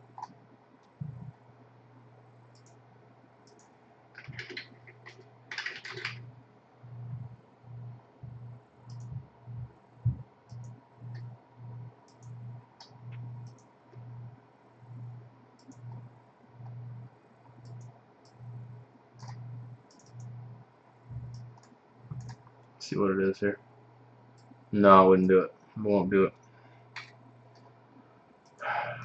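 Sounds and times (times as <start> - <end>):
pulsing low hum: 0.0 - 3.6, 6.1 - 24.9
computer mouse clicks: 0.1 - 1.3, 2.5 - 2.8, 3.4 - 6.3, 8.8 - 9.2, 10.5 - 11.3, 12.0 - 14.1, 15.6 - 16.8, 17.4 - 18.4, 19.2 - 20.4, 21.2 - 22.6, 26.4 - 27.7.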